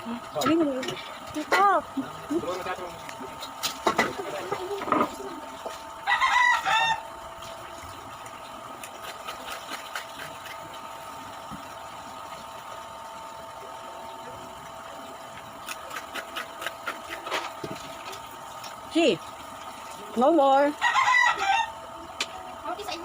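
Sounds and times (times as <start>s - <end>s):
steady mechanical hum: 0.0s - 23.0s
crunching of jicama being chewed: 15.6s - 18.7s.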